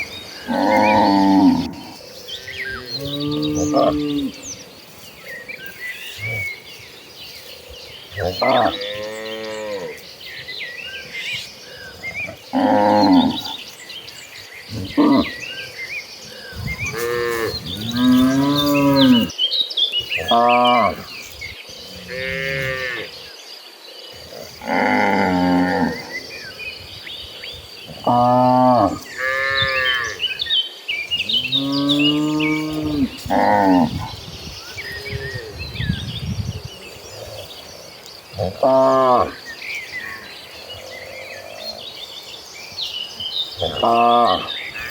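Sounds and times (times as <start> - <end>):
small birds chirping: 0.0 - 44.9
cattle mooing: 0.5 - 1.9, 16.6 - 19.3, 31.4 - 34.1.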